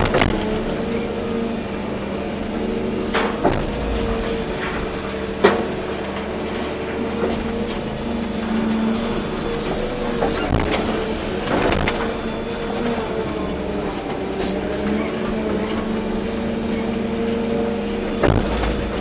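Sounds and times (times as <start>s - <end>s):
excavator diesel engine running: 0.0s - 19.0s
sharp machine knocks: 3.3s - 6.4s, 18.2s - 19.0s.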